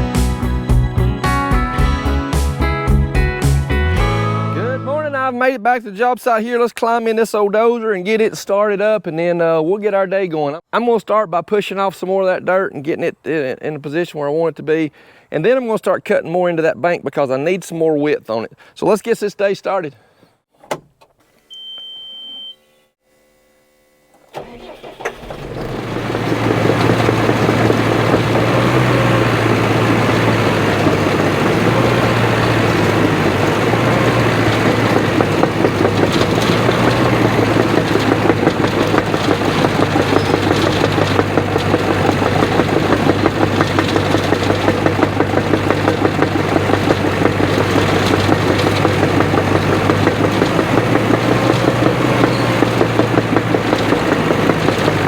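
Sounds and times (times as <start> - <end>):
short high beep: 21.5 - 22.8
dozer diesel engine starting: 24.2 - 55.0.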